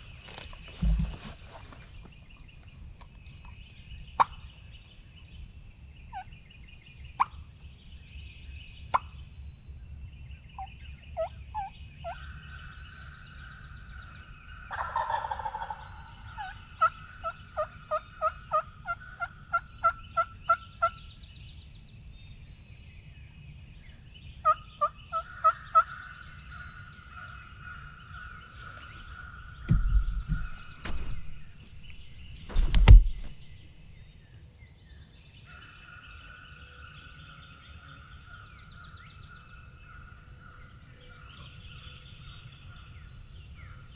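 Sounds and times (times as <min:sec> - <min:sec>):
turkey yelping: 0:14.7 - 0:16.9
turkey gobbling: 0:14.7 - 0:18.6
low thumps: 0:28.6 - 0:34.0.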